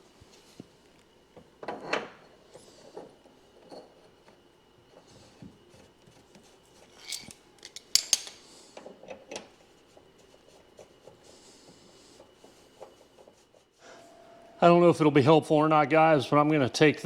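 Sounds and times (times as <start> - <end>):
small metal parts clicking: 7.0 - 8.4.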